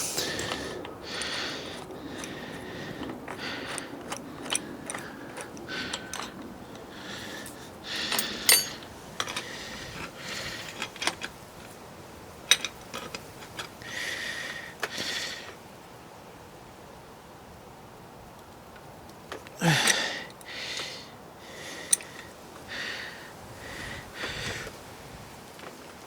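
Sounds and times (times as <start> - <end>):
metal clinks and clicks: 3.0 - 6.5, 7.4 - 9.5.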